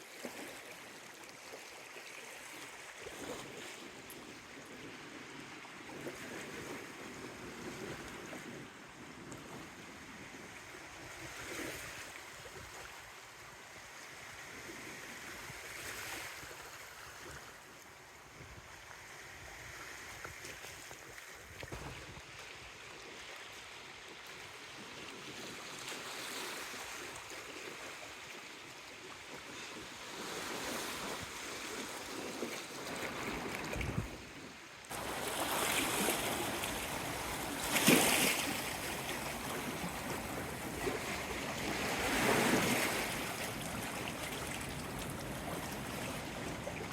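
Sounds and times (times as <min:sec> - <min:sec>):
gusty wind: 0:33.6 - 0:34.2
sea water washing: 0:34.9 - 0:46.9.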